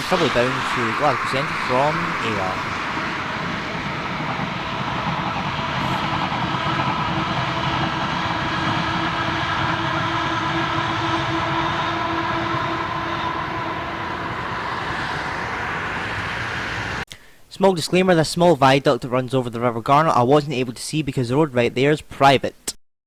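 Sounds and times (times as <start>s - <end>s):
electric train passing: 0.0s - 17.0s.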